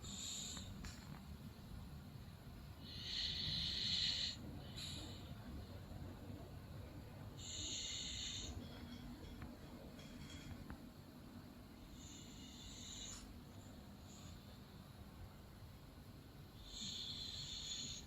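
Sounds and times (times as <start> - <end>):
dog snoring: 2.9 - 5.0, 7.4 - 8.6, 11.9 - 13.3, 16.6 - 18.0.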